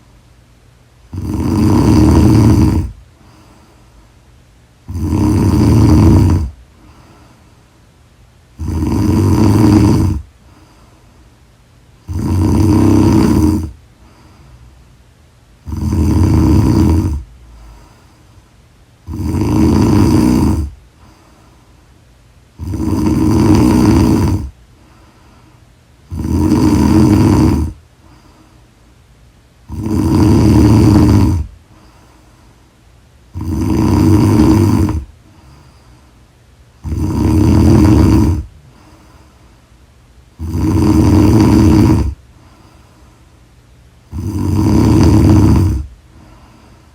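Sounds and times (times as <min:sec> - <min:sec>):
woman snoring loudly: 0:01.1 - 0:03.0, 0:04.9 - 0:06.6, 0:08.6 - 0:10.3, 0:12.0 - 0:13.8, 0:15.6 - 0:17.3, 0:19.0 - 0:20.8, 0:22.6 - 0:24.6, 0:26.1 - 0:27.8, 0:29.6 - 0:31.5, 0:33.3 - 0:35.1, 0:36.8 - 0:38.5, 0:40.4 - 0:42.2, 0:44.1 - 0:45.9.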